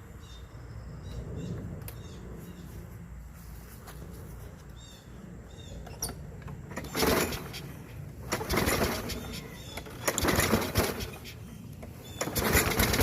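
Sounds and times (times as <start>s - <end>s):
birds chirping faintly: 4.2s - 13.0s
mower engine pull-started: 5.9s - 13.0s.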